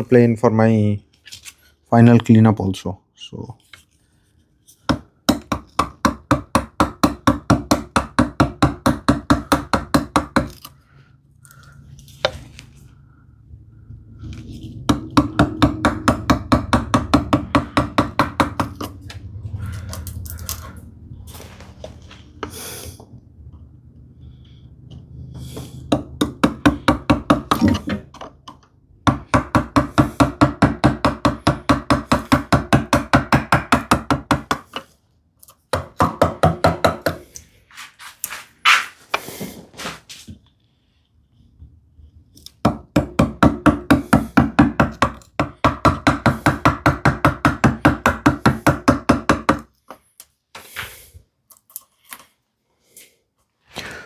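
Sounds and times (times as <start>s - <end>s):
chisel tapping into wood: 4.9s - 10.6s, 14.9s - 19.0s, 25.6s - 34.9s, 35.7s - 37.2s, 42.7s - 49.7s.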